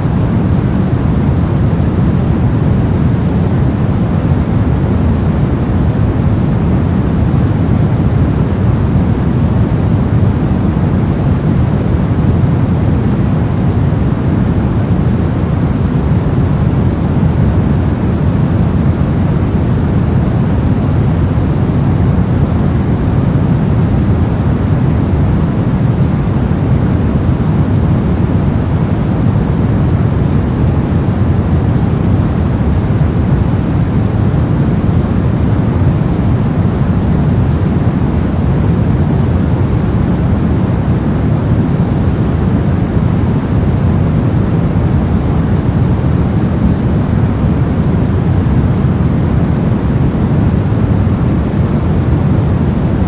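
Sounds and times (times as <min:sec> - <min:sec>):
brown noise rumbling hiss: 0:00.0 - 0:53.0.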